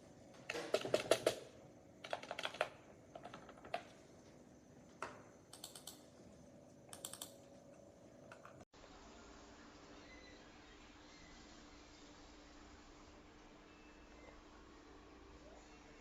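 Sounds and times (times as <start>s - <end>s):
keyboard key clicks: 5.5s - 6.0s.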